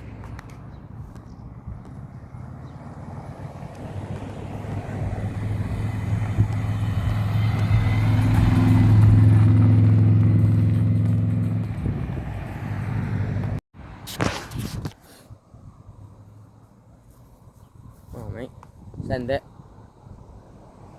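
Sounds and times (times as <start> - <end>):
car driving past: 1.4 - 13.6.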